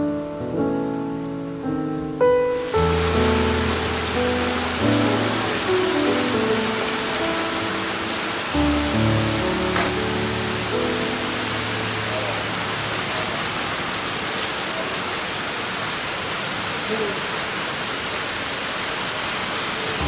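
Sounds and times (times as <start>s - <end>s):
heavy rain falling: 2.4s - 20.0s.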